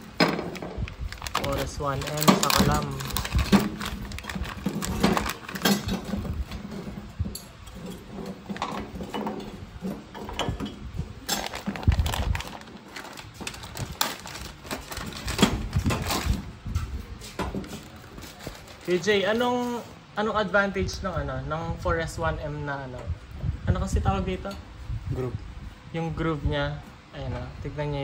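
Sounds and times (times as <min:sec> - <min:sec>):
metal parts and tools clinking: 0:01.4 - 0:10.7.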